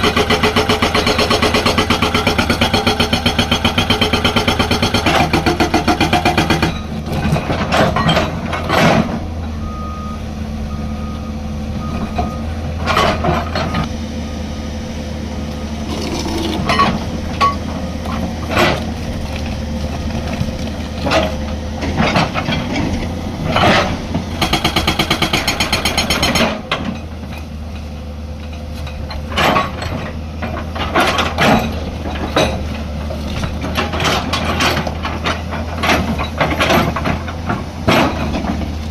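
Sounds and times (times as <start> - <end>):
hydraulic breaker hammering stone: 0.0 - 9.2, 23.5 - 27.1
excavator diesel engine running: 0.0 - 38.9.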